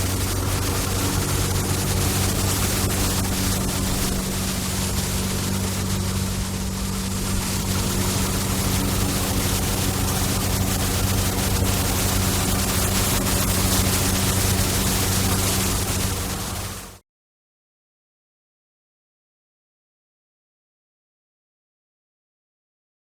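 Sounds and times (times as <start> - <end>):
truck engine hum: 0.0 - 16.9
loud even hiss: 0.0 - 17.0.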